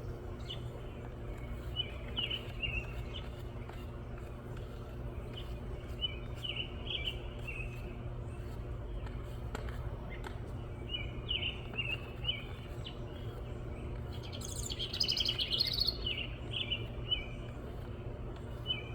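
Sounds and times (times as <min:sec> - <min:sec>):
steady low hum: 0:00.0 - 0:18.9
wren singing: 0:10.8 - 0:17.4.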